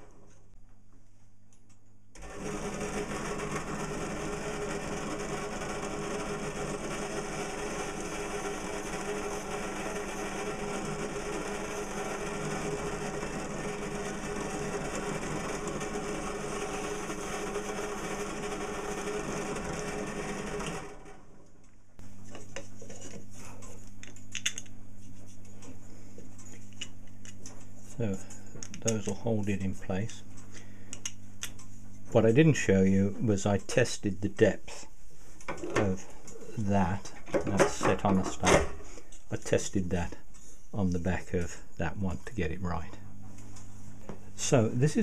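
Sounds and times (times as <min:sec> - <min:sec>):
power tool motor humming: 0:02.2 - 0:21.2
small parts clicking and knocking: 0:23.9 - 0:24.8.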